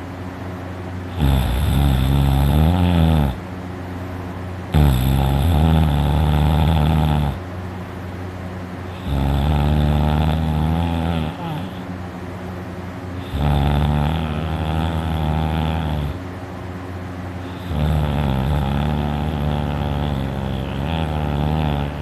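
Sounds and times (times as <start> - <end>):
man snoring loudly: 1.1 - 3.4, 4.7 - 7.4, 8.9 - 11.9, 13.2 - 16.2, 17.4 - 22.0.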